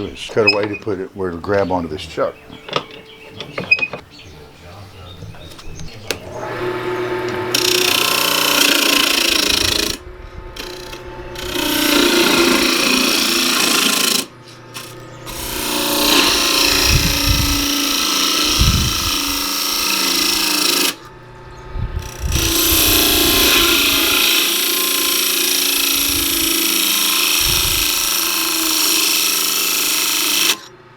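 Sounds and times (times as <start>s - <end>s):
lathe gouge scraping hiss: 22.1s - 30.7s.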